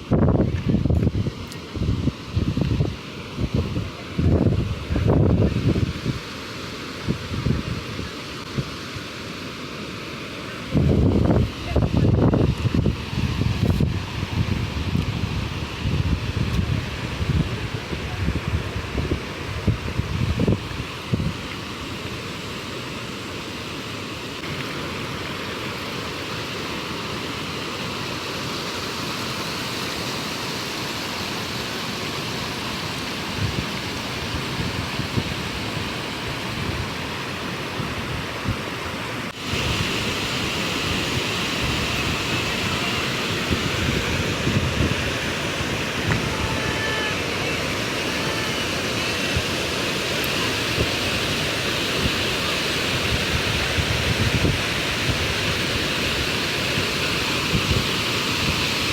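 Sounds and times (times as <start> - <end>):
wind buffeting microphone: 0.0 - 6.2, 10.7 - 21.5, 33.2 - 38.8, 39.4 - 50.0, 50.6 - 58.9
waterfall rushing: 0.0 - 58.9.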